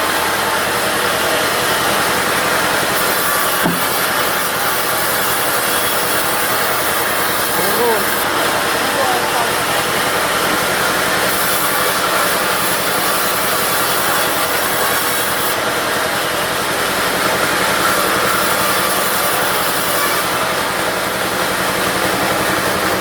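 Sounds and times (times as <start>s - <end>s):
diesel engine running: 0.0s - 23.0s
bandsaw blade hissing through wood: 2.0s - 8.3s, 10.0s - 15.6s, 17.5s - 22.4s.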